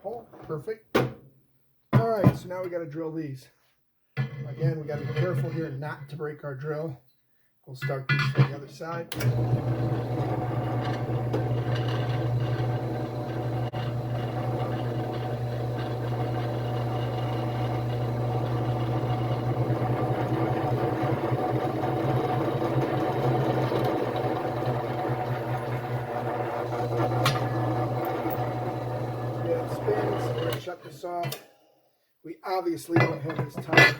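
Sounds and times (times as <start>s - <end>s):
drill press motor running: 9.2s - 30.6s
drill bit drilling into steel: 9.3s - 30.6s.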